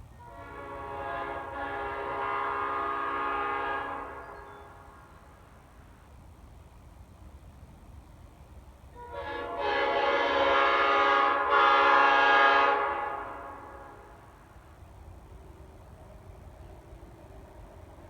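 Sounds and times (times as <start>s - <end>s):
train horn chord: 0.2s - 5.8s, 8.9s - 14.6s.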